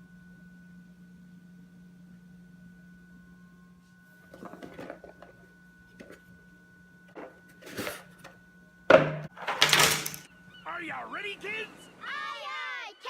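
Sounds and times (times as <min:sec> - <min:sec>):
faint steady hum: 0:00.0 - 0:13.0
puzzle pieces clicking: 0:09.4 - 0:10.3.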